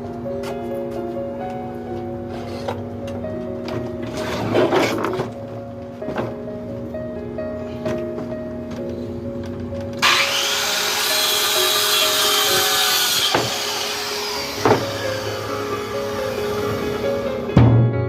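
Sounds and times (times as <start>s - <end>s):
background music: 0.0s - 18.0s
saw cutting wood: 10.0s - 17.5s
sharp knocks: 14.6s - 14.9s.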